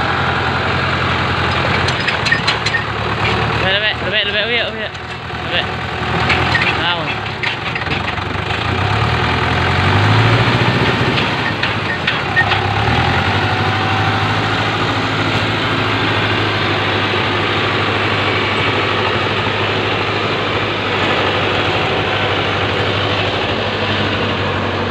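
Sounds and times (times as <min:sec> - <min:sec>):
vehicle engine running hard: 0:00.0 - 0:24.9
clicks and knocks: 0:01.4 - 0:03.7, 0:04.7 - 0:08.7, 0:10.4 - 0:13.2.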